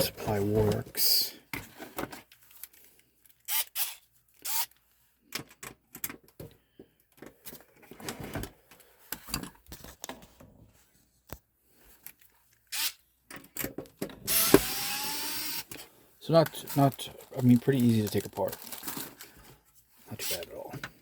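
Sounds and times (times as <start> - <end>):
metal and plastic parts being handled: 0.0 - 14.7, 15.6 - 21.0.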